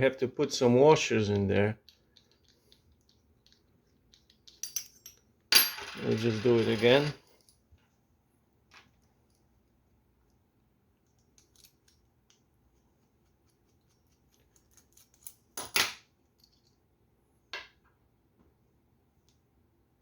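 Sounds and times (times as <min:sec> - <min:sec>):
small metal parts clicking: 0:01.8 - 0:05.2.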